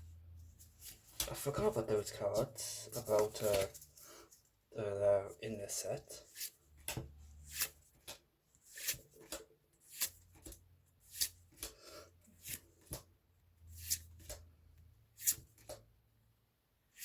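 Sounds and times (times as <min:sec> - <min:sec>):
trading cards swishing: 0:02.9 - 0:03.8.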